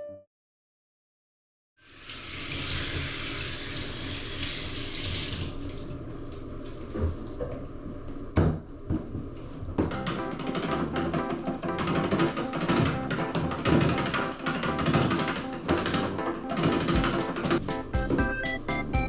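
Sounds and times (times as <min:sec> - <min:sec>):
running water: 0:01.8 - 0:06.4
knocks: 0:09.9 - 0:18.4
music with drum beat: 0:09.9 - 0:19.0.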